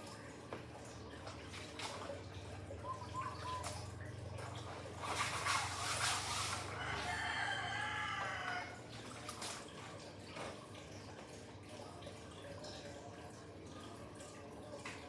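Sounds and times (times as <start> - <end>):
faint dripping water: 0.0 - 5.4, 6.6 - 15.0
rooster crowing: 6.7 - 8.9.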